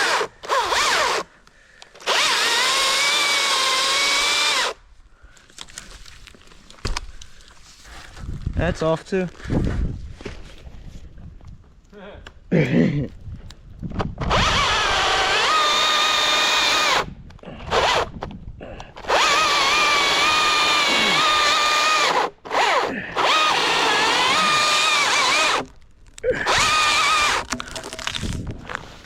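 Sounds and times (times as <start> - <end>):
chainsaw cutting wood: 0.0 - 1.3, 1.9 - 4.8, 14.2 - 18.2, 19.0 - 28.4.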